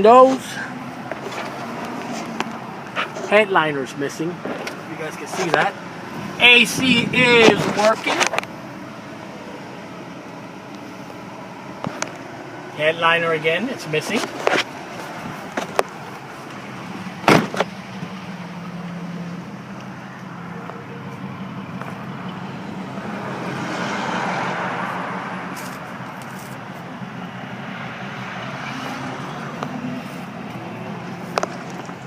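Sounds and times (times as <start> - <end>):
truck engine idling: 0.0 - 23.5.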